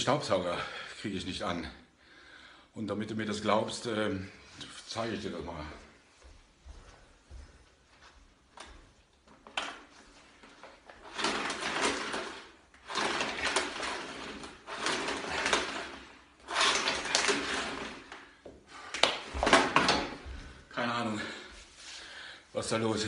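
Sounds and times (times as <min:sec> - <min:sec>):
plastic clattering and rustling: 0:08.6 - 0:20.5.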